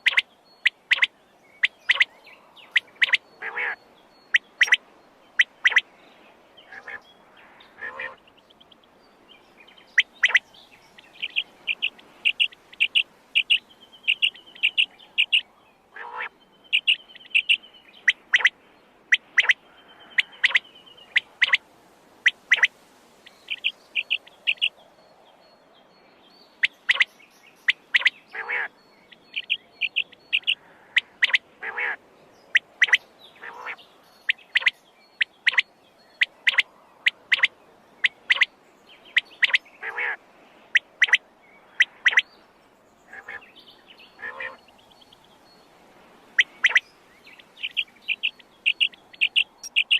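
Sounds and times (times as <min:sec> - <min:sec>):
quail calling: 0:00.0 - 0:02.1, 0:02.7 - 0:04.8, 0:05.4 - 0:05.8, 0:06.7 - 0:07.0, 0:07.7 - 0:08.2, 0:10.0 - 0:10.4, 0:11.0 - 0:15.4, 0:16.0 - 0:18.5, 0:19.1 - 0:21.6, 0:22.2 - 0:24.7, 0:26.6 - 0:27.1, 0:27.7 - 0:28.7, 0:29.3 - 0:33.8, 0:34.5 - 0:38.5, 0:39.1 - 0:41.2, 0:41.8 - 0:42.3, 0:43.1 - 0:43.5, 0:44.2 - 0:45.1, 0:46.4 - 0:49.9.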